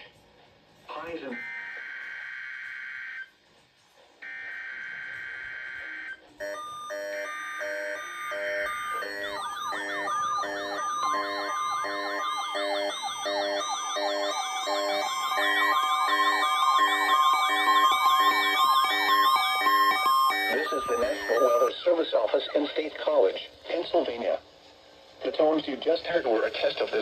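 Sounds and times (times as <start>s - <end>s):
pulsing alarm beeps: 4.2s - 21.8s
warbling siren-like sweeps: 7.0s - 21.7s
two-tone data screech: 8.3s - 21.9s.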